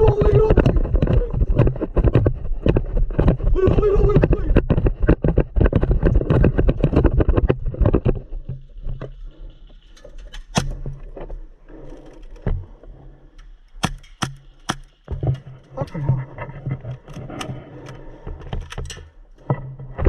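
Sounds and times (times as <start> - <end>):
footsteps: 0.0 - 20.0
gear clattering and rustling: 4.7 - 20.0.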